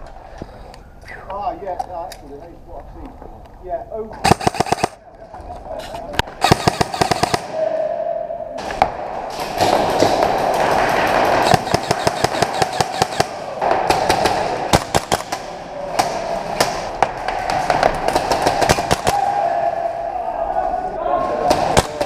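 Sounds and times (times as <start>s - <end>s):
airsoft gun shots: 4.2s - 5.0s, 9.4s - 16.9s.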